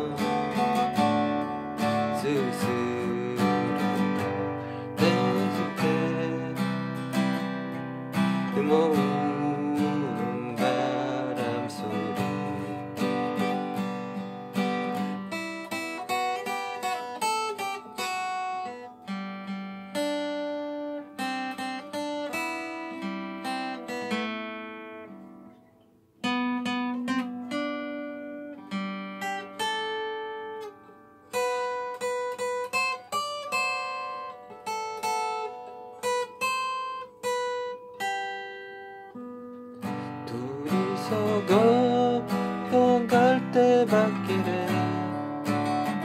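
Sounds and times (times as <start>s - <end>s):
acoustic guitar picking and chords: 0.0s - 46.0s.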